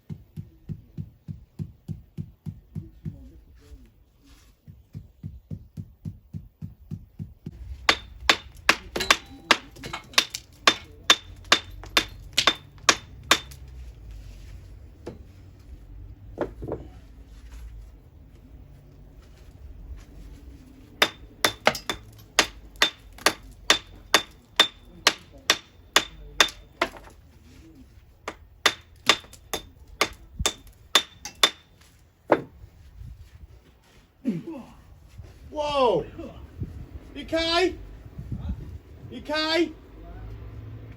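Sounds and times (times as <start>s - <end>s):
hammer blows: 7.5s - 14.2s, 20.9s - 27.2s.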